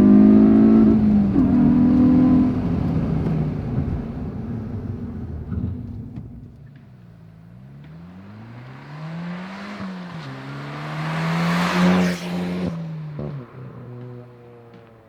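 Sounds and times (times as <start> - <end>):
car accelerating past: 7.6 - 15.0.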